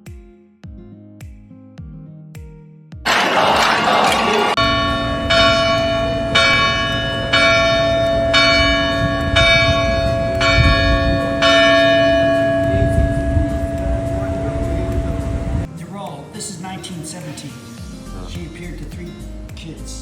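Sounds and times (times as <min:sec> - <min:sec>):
church bell tolling: 0:03.1 - 0:15.7.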